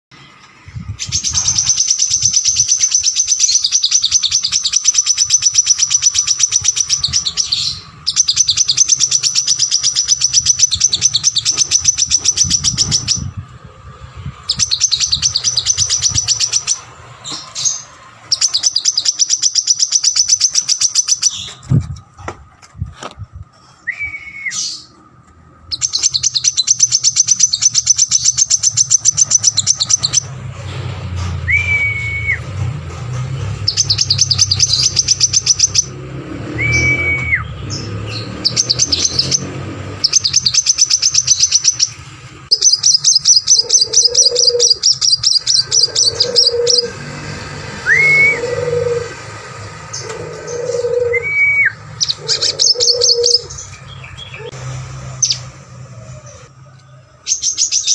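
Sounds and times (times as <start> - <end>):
bird singing rattling trills: 0.2 - 13.4, 14.3 - 21.8, 25.6 - 30.4, 33.4 - 36.0, 36.7 - 54.6
whistled bird notes: 23.8 - 25.0, 31.4 - 32.6, 36.6 - 37.8, 38.4 - 54.6.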